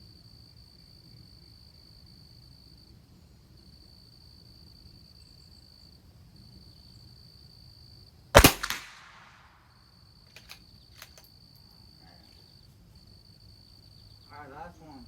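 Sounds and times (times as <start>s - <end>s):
cricket trill: 0.0s - 15.0s
rifle bolt clicks: 8.4s - 9.4s, 10.3s - 11.3s
rifle shot with echo: 8.4s - 9.6s.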